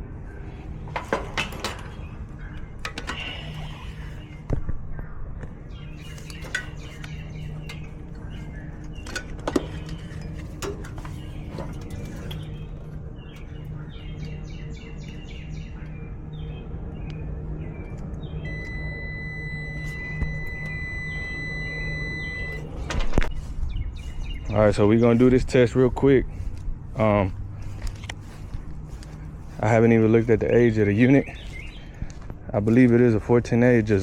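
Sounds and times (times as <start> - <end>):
birds chirping: 0.0 - 34.0
steady low hum: 0.0 - 34.0
high electronic beep: 18.5 - 22.7.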